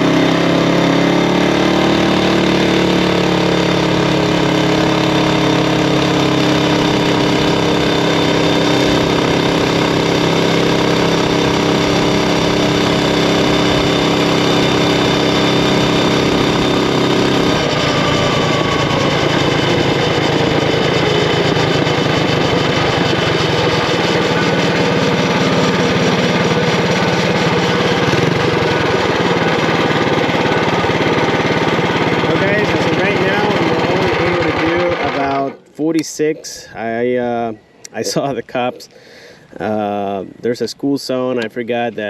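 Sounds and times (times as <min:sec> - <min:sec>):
small engine running at high speed: 0:00.0 - 0:35.7.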